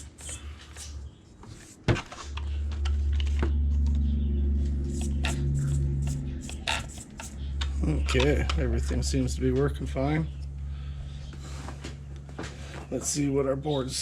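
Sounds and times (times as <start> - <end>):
small electric motor running: 3.3 - 7.7.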